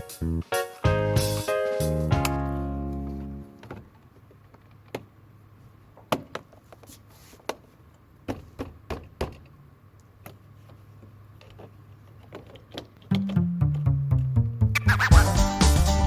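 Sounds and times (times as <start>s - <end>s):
music with bass line: 0.0s - 3.5s, 13.1s - 16.0s.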